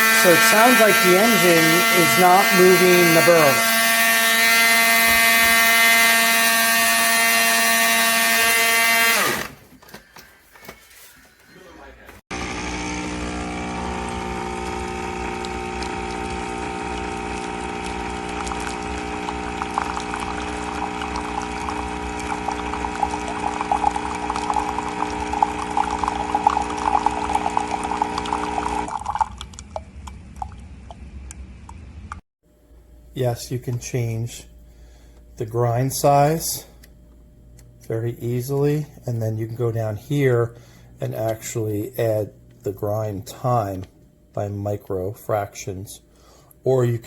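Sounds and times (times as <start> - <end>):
coffee grinder motor whining: 0.0 - 9.6, 12.3 - 28.9.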